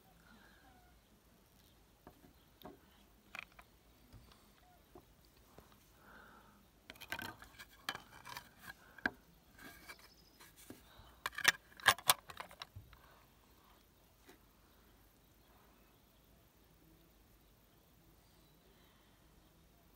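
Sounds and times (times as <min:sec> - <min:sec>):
metal parts clicking and clinking: 0:11.2 - 0:12.7.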